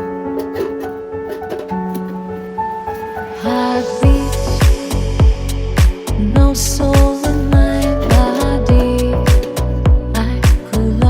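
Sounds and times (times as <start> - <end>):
held keyboard chord: 0.0 - 11.0
deep bass drum hits: 4.0 - 10.6.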